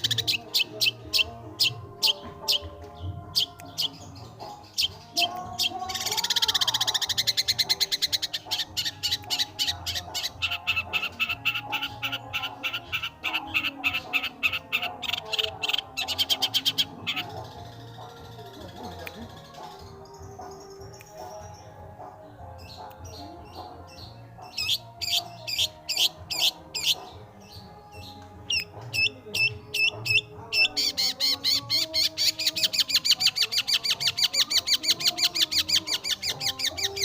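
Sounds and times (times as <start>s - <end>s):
shrike singing chattering notes: 28.4s - 37.0s.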